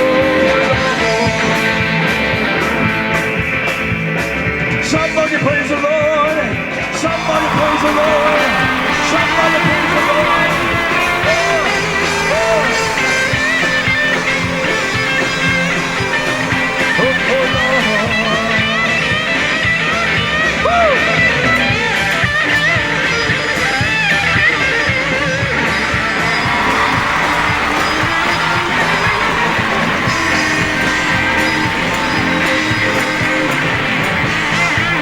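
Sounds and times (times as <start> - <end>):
gospel band playing: 0.0 - 35.0
lead guitar bending notes: 7.2 - 35.0.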